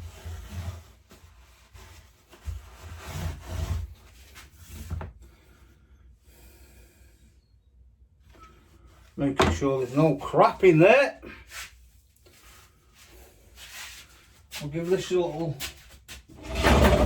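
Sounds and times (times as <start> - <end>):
rubbing and scuffing engine parts: 11.4 - 17.0.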